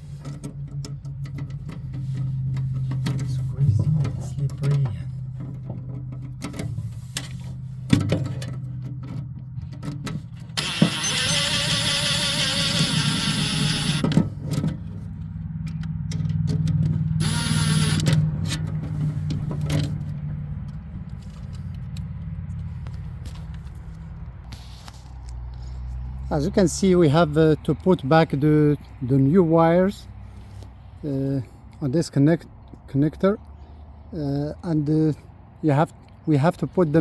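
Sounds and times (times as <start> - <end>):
cordless drill running: 10.5 - 14.1, 17.2 - 18.2
steady low hum: 17.0 - 24.9.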